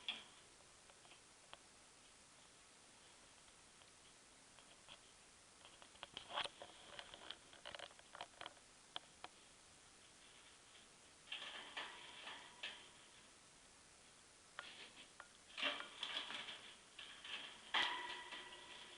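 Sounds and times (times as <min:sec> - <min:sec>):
budgie clambering on wire cage: 0:11.3 - 0:13.0, 0:14.7 - 0:18.9.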